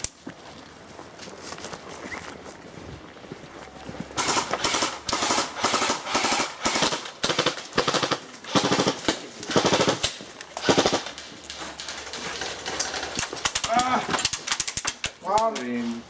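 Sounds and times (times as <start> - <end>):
airsoft guns firing bursts: 4.2 - 11.2.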